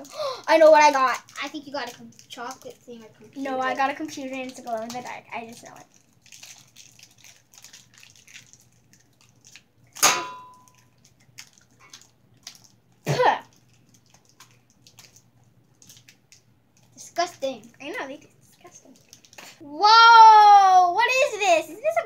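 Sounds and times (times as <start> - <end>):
toy packaging crinkling: 0.1 - 9.7, 10.5 - 12.8, 13.5 - 17.0, 18.6 - 19.6.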